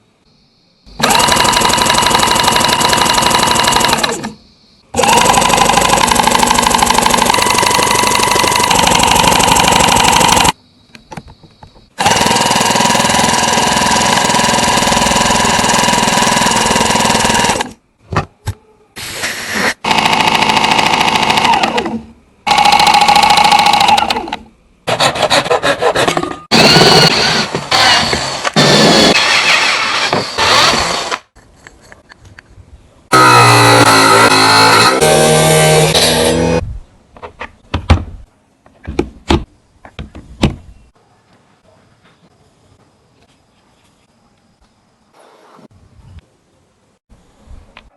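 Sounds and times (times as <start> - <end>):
power tool whining: 5.0 - 10.6, 26.5 - 31.2, 33.1 - 36.6.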